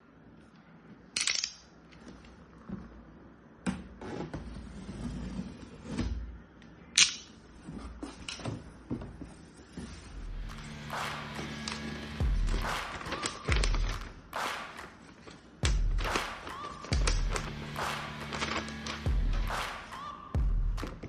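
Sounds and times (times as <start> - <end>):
hard objects clicking and knocking: 15.0 - 19.7.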